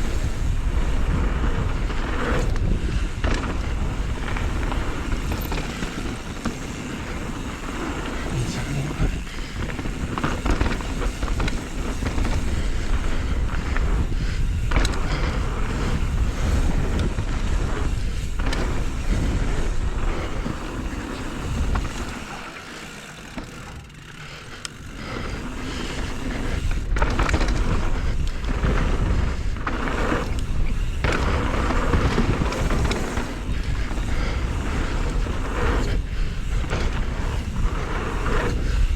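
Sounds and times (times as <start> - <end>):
bike rattling with sharp knocks: 0.0 - 8.3, 9.2 - 38.9
bike tyres rumbling over dirt: 0.0 - 38.9.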